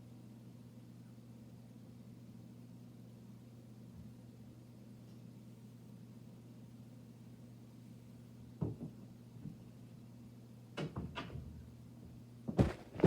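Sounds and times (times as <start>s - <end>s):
light knocks and clunks: 8.6s - 9.6s, 12.5s - 13.0s
steady low hum: 11.6s - 13.0s
loud thump: 12.5s - 13.0s.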